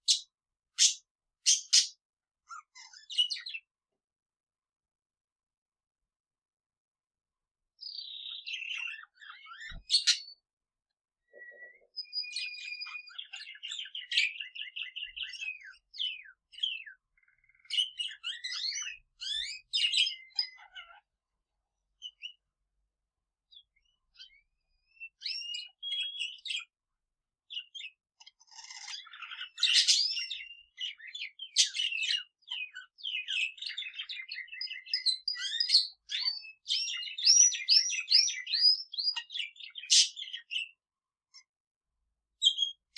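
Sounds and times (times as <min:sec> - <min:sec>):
canary singing: 0:00.0 - 0:03.8, 0:07.8 - 0:10.5, 0:11.2 - 0:21.2, 0:23.5 - 0:26.8, 0:27.4 - 0:41.5, 0:42.4 - 0:42.9.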